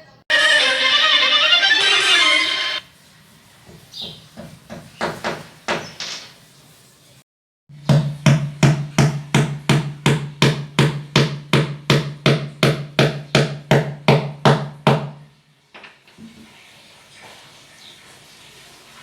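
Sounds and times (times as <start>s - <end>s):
heavy hammering: 7.8s - 15.1s.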